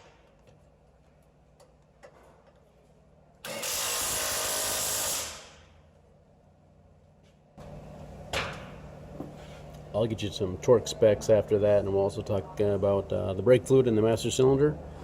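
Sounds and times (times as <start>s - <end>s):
power tool running bolt: 3.4s - 5.6s.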